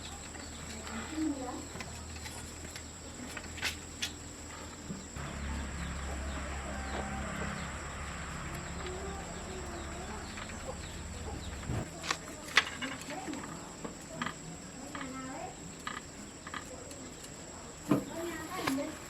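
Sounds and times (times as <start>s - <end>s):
chickens clucking: 4.0s - 11.9s
low steady hum: 5.2s - 11.9s.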